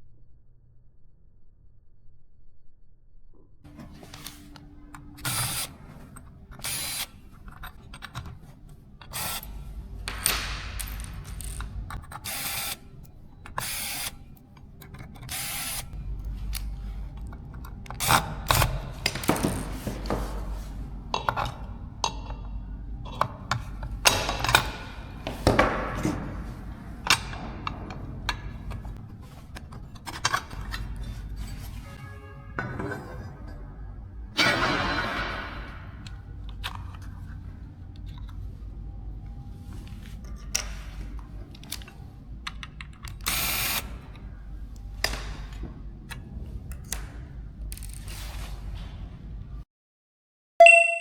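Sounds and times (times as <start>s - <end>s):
clicks and scrapes of parts: 3.7s - 33.6s, 34.4s - 49.1s
small screwdriver whirring: 6.5s - 8.3s, 9.0s - 9.6s, 11.2s - 12.8s, 13.5s - 14.2s, 14.9s - 16.7s, 43.1s - 44.0s.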